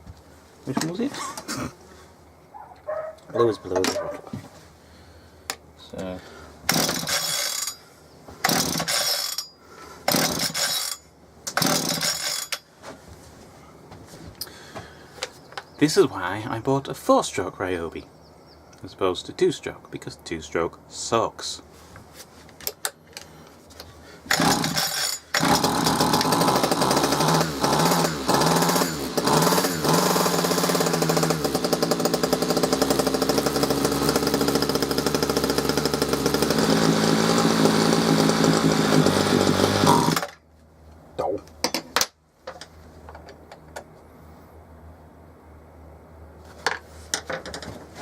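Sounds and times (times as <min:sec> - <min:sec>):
small two-stroke engine revving: 0:06.7 - 0:07.7, 0:24.3 - 0:40.3.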